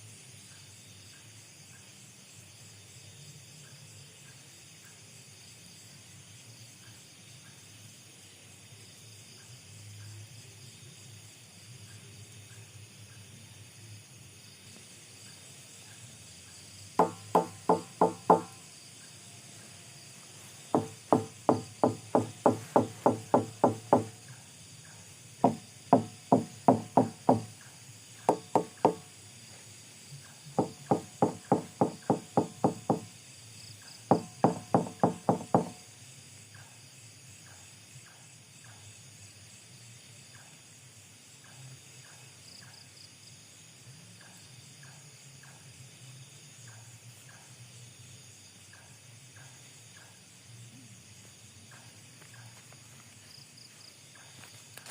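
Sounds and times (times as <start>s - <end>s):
short hollow pitched knocks: 17.0s - 18.6s, 20.6s - 24.3s, 25.4s - 27.6s, 28.2s - 29.1s, 30.6s - 33.1s, 34.1s - 35.8s.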